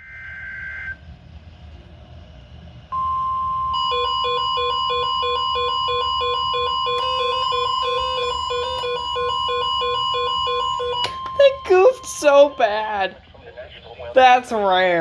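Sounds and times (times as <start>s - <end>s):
steady warning alarm tone: 0.0s - 1.0s, 2.9s - 15.0s
fast electronic beeping: 3.8s - 13.2s.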